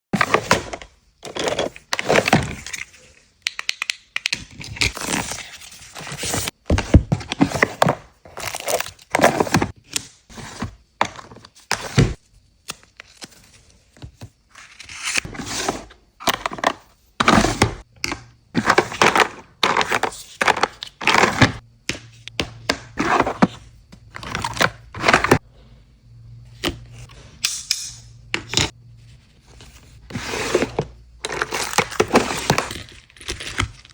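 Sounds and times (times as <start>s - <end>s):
items knocking and clicking: 6.0s - 12.2s, 15.2s - 25.4s, 30.2s - 33.9s.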